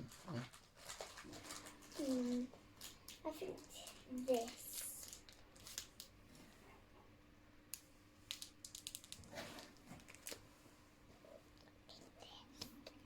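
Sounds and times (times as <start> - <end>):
plastic snack packets rustling: 0.0 - 6.1, 8.3 - 10.4.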